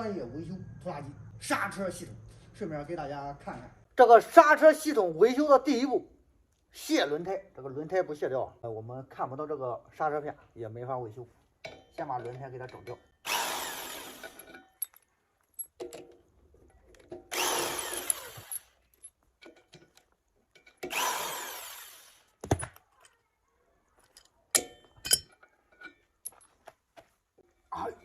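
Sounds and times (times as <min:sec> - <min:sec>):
impact wrench spinning off nuts: 0:13.2 - 0:14.6, 0:17.2 - 0:18.8, 0:20.8 - 0:22.6
light metal clinks: 0:14.4 - 0:17.1, 0:24.0 - 0:26.6.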